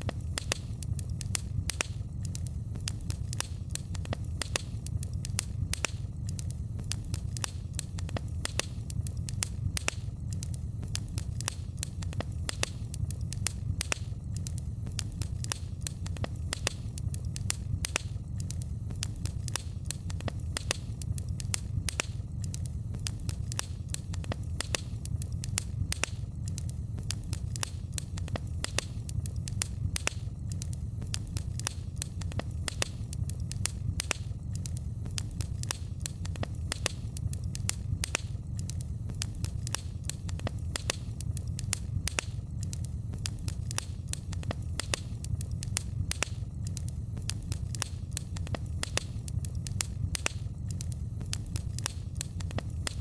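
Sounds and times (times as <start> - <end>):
fire crackling and popping: 0.0 - 53.0
low rumble of fire: 0.0 - 53.0.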